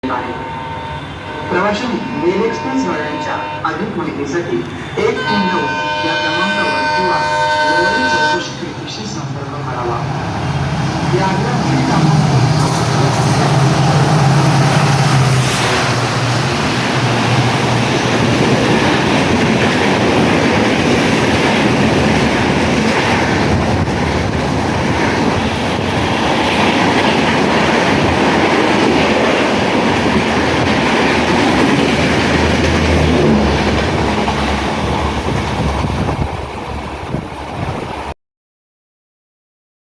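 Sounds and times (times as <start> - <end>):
train rushing past: 0.0 - 38.2.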